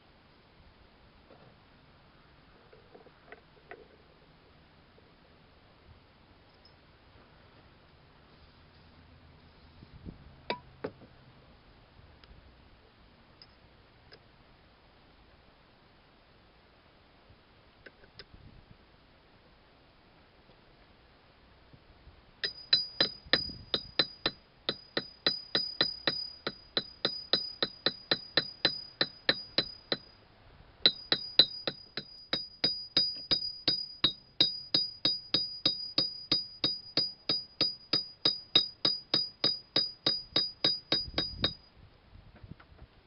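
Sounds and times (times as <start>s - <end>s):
rapid metallic clinks: 22.4s - 30.1s, 30.8s - 41.7s.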